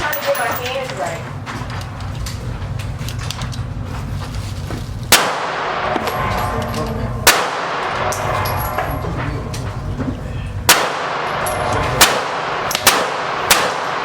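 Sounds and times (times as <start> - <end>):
gunshots with ringing echo: 5.1 - 9.1, 10.6 - 14.0.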